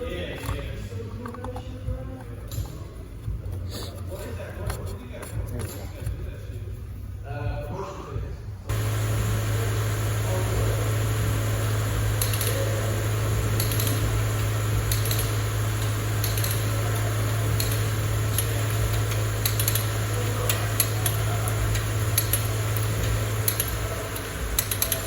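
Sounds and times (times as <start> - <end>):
car engine idling: 8.7 - 25.0.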